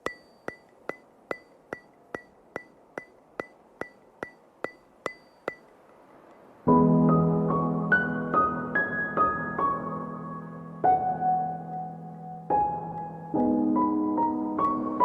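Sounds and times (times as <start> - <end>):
ringing clicks: 0.0 - 6.5
ambient piano music: 6.6 - 15.0.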